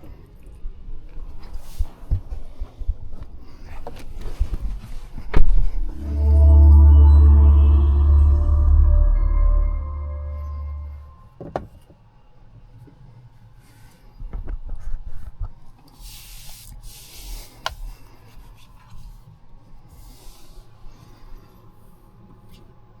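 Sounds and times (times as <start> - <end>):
background music: 5.9 - 11.3.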